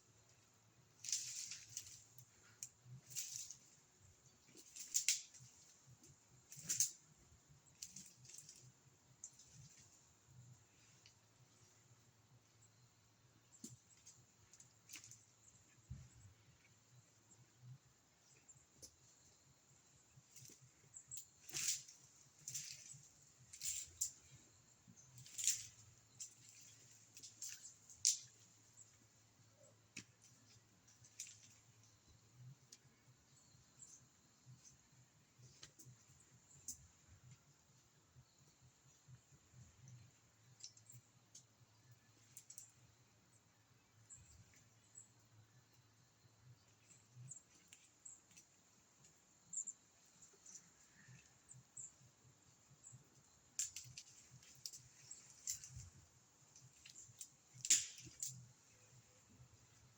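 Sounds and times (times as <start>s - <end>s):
low steady hum: 0.0s - 59.9s
faint scattered clicks: 4.5s - 7.1s, 7.7s - 10.0s, 13.5s - 16.8s, 20.3s - 33.0s, 35.4s - 37.5s, 38.4s - 42.9s, 46.5s - 52.0s, 52.8s - 59.9s
faint clicks and ticks: 39.8s - 42.9s.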